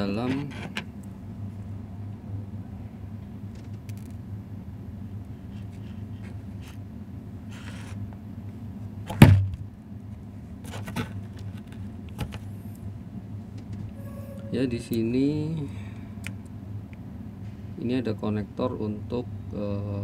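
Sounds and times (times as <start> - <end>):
low hum: 12.3 - 17.8.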